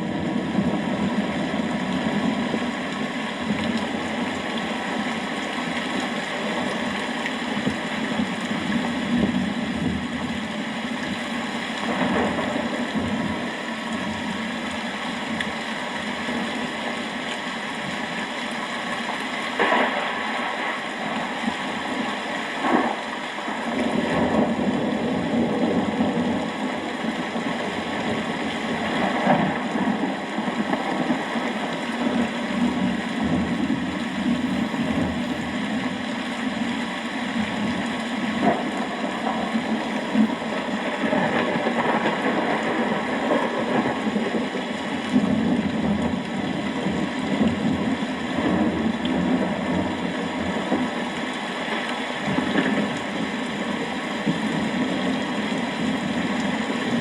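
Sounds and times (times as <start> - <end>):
steady rain: 0.0 - 57.0
low rumble of thunder: 11.8 - 14.4, 19.6 - 51.3.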